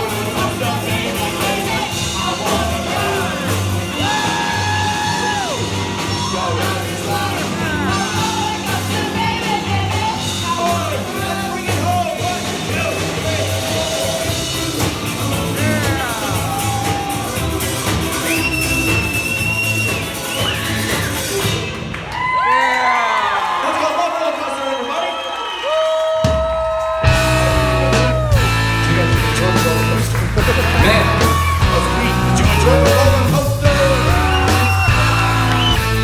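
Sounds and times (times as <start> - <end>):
repeating bass line: 0.0 - 21.0, 27.1 - 36.0
live rock band playing: 0.0 - 22.1, 26.2 - 36.0
drums: 0.0 - 36.0
vocalist singing long notes: 12.4 - 18.5, 27.0 - 36.0.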